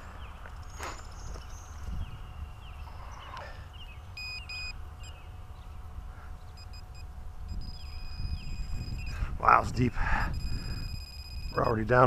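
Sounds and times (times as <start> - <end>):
low steady rumble: 0.0 - 12.0
metal detector beeps: 4.2 - 5.2, 6.6 - 9.3, 10.2 - 12.0.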